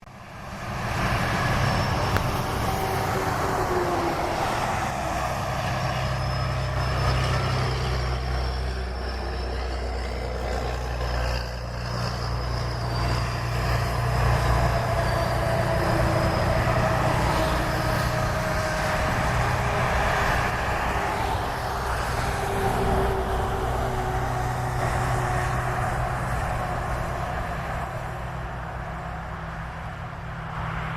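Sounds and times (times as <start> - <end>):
truck engine rumbling: 0.0 - 30.9.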